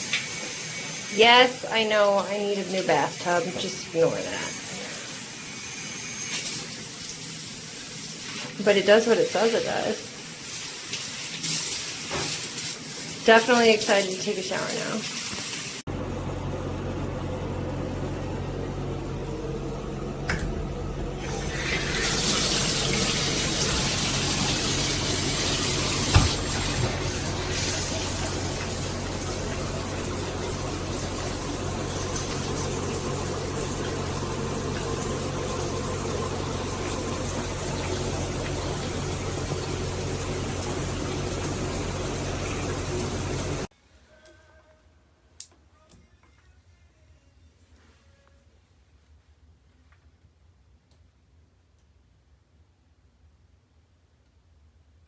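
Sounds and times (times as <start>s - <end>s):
water spraying from shower head: 0.0s - 15.8s, 21.2s - 43.7s.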